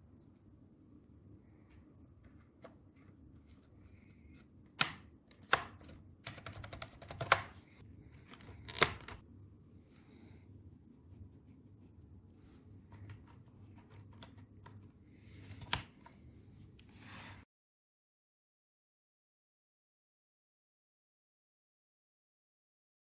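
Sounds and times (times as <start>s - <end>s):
small keyboard clicks: 4.8s - 7.5s.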